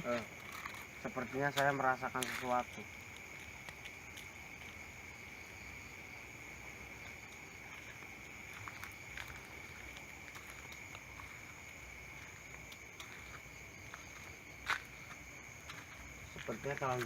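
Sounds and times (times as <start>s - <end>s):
night insects trilling: 0.0s - 17.0s
small clicks and rustles: 0.1s - 1.0s, 7.1s - 11.6s.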